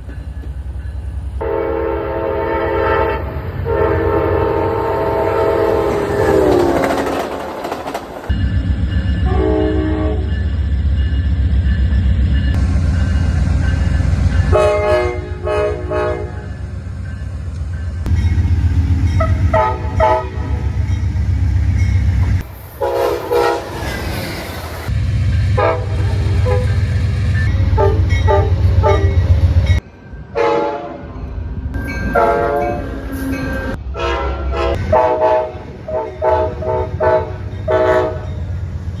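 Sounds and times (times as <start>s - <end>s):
rumble of passing trains: 0.0s - 39.0s
locomotive air horn blasts: 1.4s - 6.8s, 9.3s - 10.3s, 14.5s - 16.5s, 19.2s - 20.7s, 22.8s - 23.9s, 25.6s - 26.8s, 27.7s - 29.2s, 30.4s - 31.0s, 32.2s - 33.0s, 33.6s - 38.3s.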